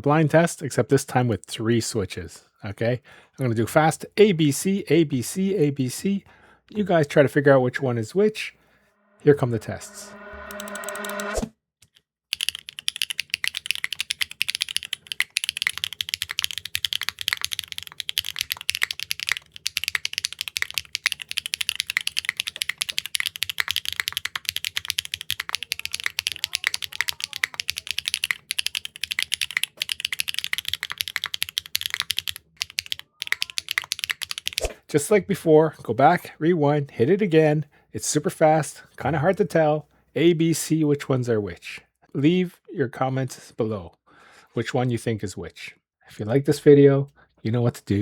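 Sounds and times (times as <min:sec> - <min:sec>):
mechanical keyboard typing: 0:12.3 - 0:34.7.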